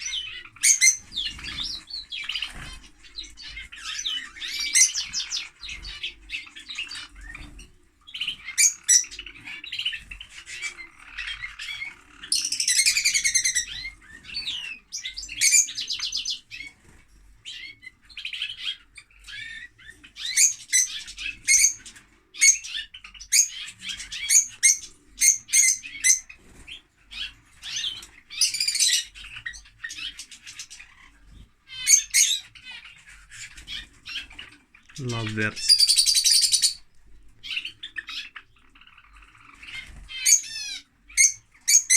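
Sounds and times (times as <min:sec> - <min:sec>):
lovebirds chirping and squawking: 0:00.0 - 0:41.9
buzzy bird call: 0:35.0 - 0:36.8.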